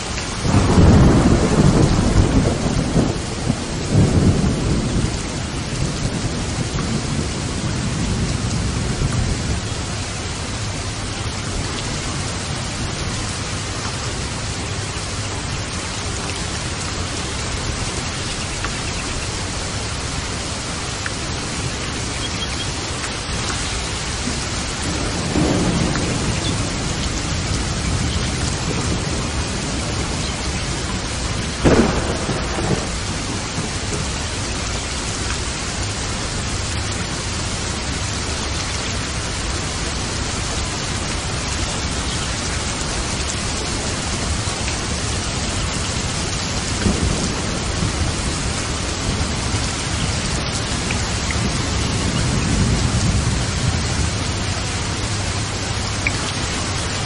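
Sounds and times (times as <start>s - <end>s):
heavy rain: 0.0s - 57.0s
thunder rumbling: 0.3s - 57.0s
sharp thunderclap: 0.4s - 9.6s, 23.8s - 34.4s, 46.6s - 50.4s.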